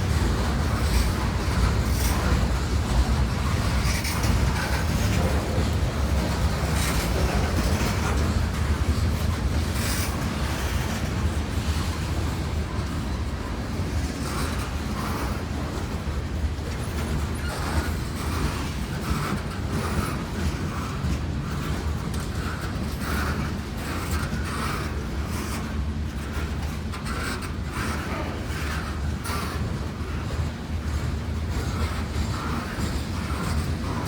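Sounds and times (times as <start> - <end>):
train cars rumbling past: 0.0 - 34.0
wheels clacking over rail joints: 0.0 - 34.0.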